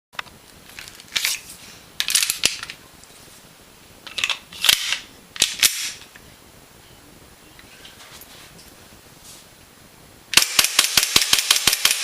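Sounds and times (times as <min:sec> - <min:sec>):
airsoft pistol shots: 0:10.3 - 0:12.0.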